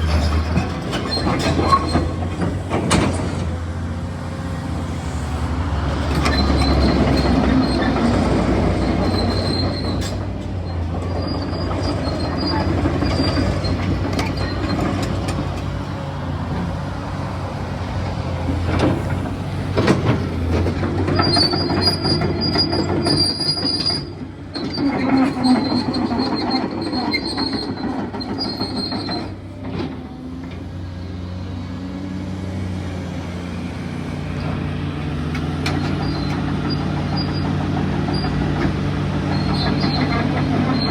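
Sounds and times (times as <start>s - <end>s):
excavator diesel engine running: 0.0s - 40.9s
high metallic squeals: 39.2s - 40.9s.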